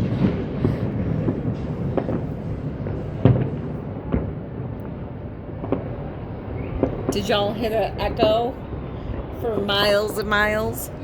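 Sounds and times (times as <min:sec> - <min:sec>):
fireworks booming: 0:00.0 - 0:11.0
low rumble of echoing reports: 0:06.2 - 0:11.0.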